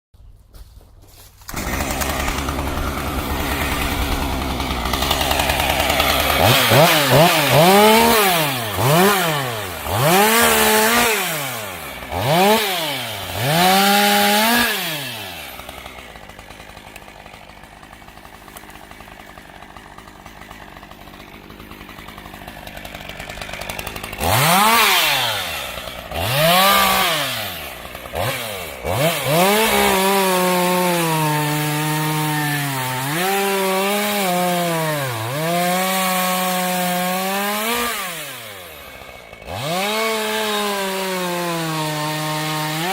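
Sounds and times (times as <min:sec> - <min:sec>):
chainsaw revving and idling: 0:01.4 - 0:42.9.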